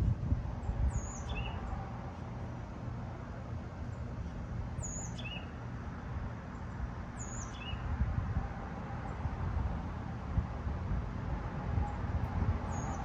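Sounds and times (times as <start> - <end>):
ceiling fan whirring: 0.0 - 7.2
bird chirping: 0.9 - 1.7, 4.8 - 5.5, 6.6 - 7.9, 12.7 - 13.0.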